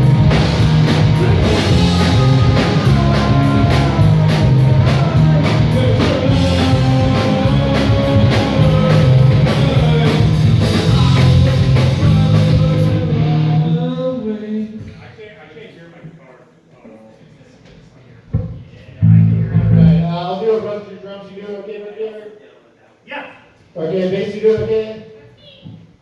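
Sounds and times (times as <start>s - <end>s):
drum kit: 0.0s - 13.4s, 18.4s - 20.1s
rock band playing loud: 0.0s - 13.7s, 19.0s - 20.1s
bass guitar: 0.0s - 13.8s, 19.0s - 20.2s
distorted electric guitar: 0.0s - 13.8s, 19.0s - 20.1s.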